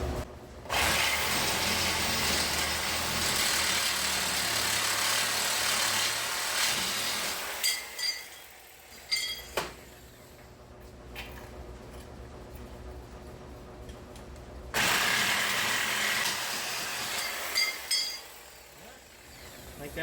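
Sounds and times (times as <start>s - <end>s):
power tool running on steel: 0.7s - 9.1s, 14.8s - 20.0s.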